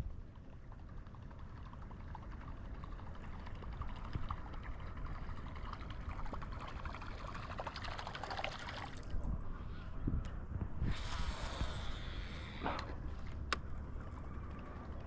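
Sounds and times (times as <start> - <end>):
water splashing and trickling: 0.2 - 9.3
steady low rumble: 9.1 - 15.0.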